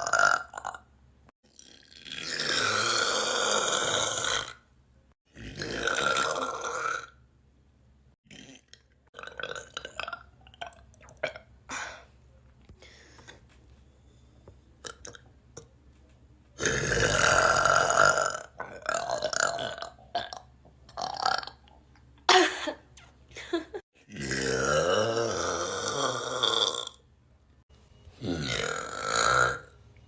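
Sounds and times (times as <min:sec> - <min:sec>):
person burping: 0:00.0 - 0:00.9, 0:01.5 - 0:04.6, 0:05.3 - 0:07.2, 0:08.2 - 0:12.1, 0:16.6 - 0:21.7, 0:23.7 - 0:27.0, 0:28.2 - 0:29.7.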